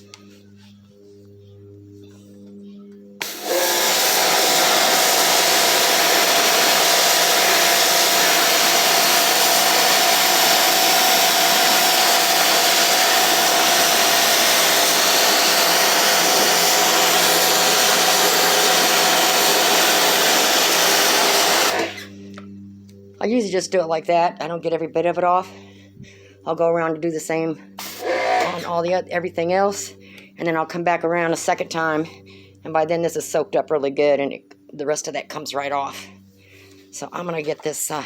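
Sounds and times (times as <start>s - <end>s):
pressure washer spraying water: 3.2s - 22.1s, 27.8s - 28.7s.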